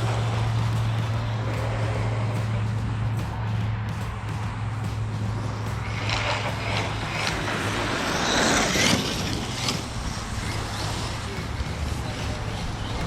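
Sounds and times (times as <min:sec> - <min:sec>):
tyres scrabbling: 0:00.0 - 0:13.0
rc truck motor whining: 0:05.8 - 0:13.0.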